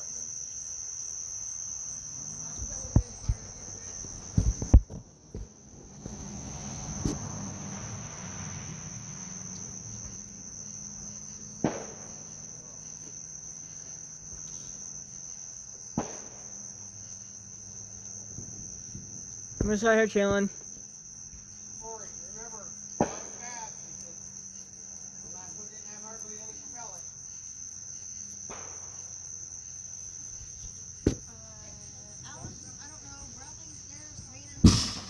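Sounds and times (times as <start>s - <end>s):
crickets chirring: 0.0s - 35.0s
sharp knocks or pops: 31.0s - 31.2s.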